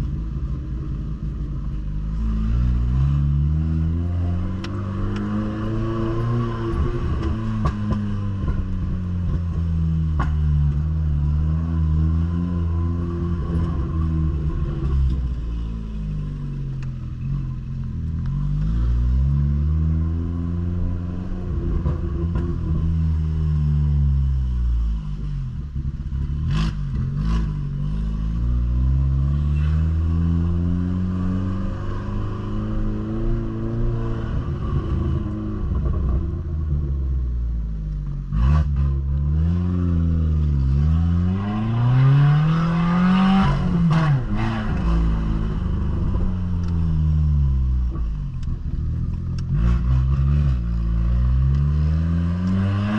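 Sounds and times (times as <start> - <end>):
car exhaust rumbling: 0.0 - 51.6.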